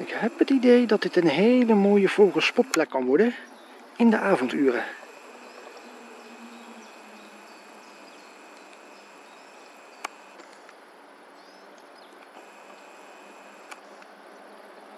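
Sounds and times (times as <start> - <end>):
high-pitched hum: 0.0 - 3.2, 4.0 - 10.5, 12.3 - 13.8
distant bird chirps: 0.0 - 10.4, 11.4 - 14.0
sharp click: 2.5 - 3.1, 8.5 - 10.7, 13.5 - 13.8
soft hiss: 3.6 - 10.8.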